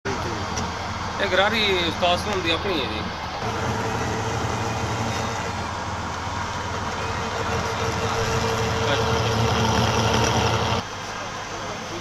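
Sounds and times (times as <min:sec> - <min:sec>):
lathe motor humming: 0:03.4 - 0:10.8.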